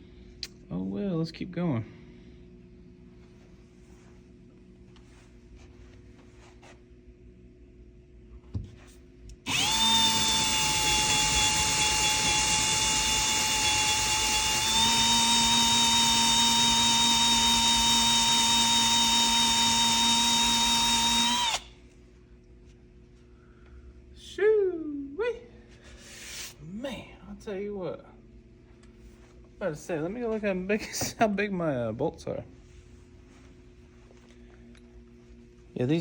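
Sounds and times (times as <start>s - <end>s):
electric drill boring into wood: 9.4s - 21.7s.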